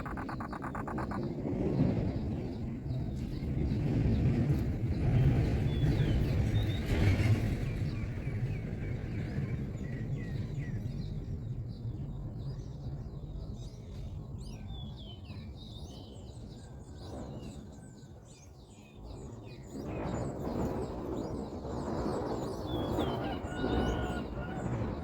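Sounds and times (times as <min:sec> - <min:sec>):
small birds chirping: 0:00.0 - 0:01.9.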